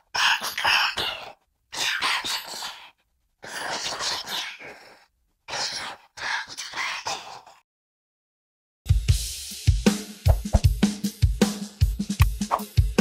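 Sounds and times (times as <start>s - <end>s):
processed breathy gibberish voice: 0.0s - 7.6s.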